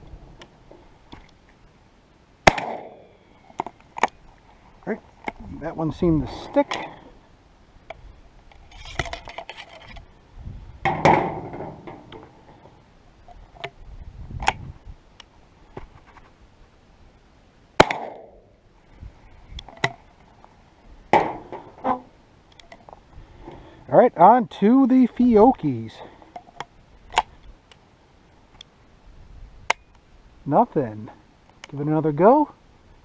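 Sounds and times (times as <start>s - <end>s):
sharp loud crack: 2.4s - 3.2s, 17.8s - 18.4s.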